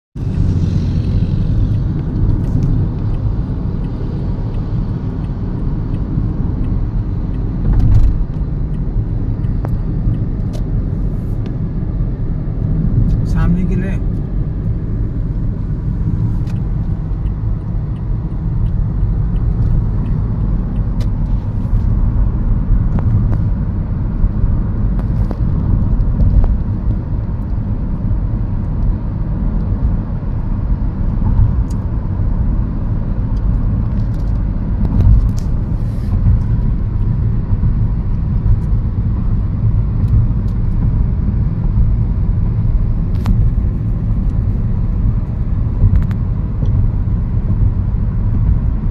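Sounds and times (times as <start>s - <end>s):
road traffic rumble: 0.2s - 48.9s.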